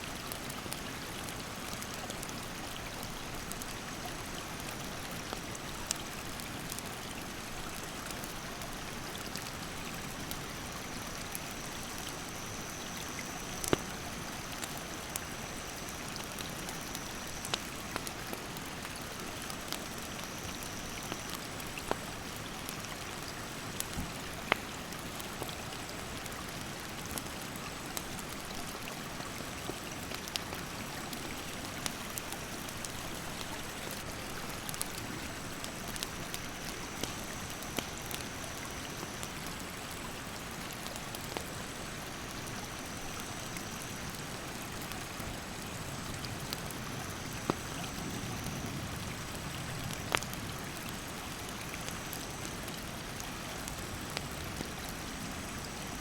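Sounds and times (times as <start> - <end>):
campfire crackling: 0.1 - 56.0.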